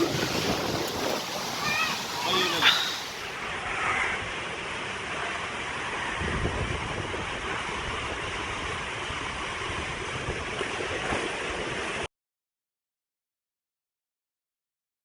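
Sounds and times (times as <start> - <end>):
wind buffeting microphone: 0.0 - 4.5, 5.7 - 12.1
waterfall rushing: 0.0 - 6.2.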